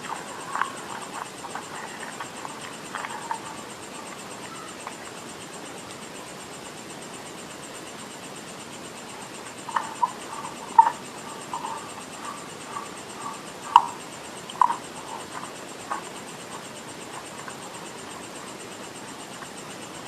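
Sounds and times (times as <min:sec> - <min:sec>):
chewing crunches: 0:00.0 - 0:05.1, 0:09.5 - 0:18.5
steady hiss: 0:00.0 - 0:20.0.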